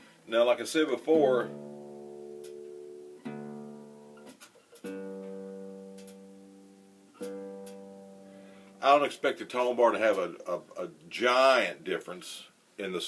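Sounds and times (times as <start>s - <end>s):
acoustic bass notes plucked: 1.1s - 8.6s.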